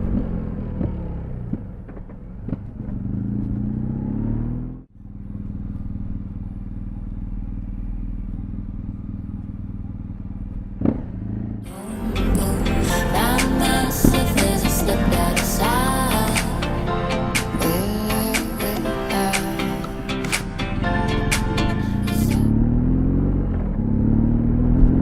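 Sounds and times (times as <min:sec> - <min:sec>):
motorcycle engine running: 0:00.0 - 0:15.0
music: 0:11.7 - 0:22.5.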